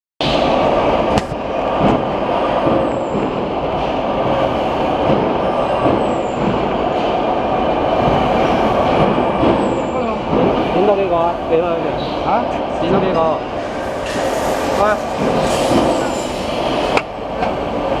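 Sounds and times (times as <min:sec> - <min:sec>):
machine running: 0:13.6 - 0:17.0.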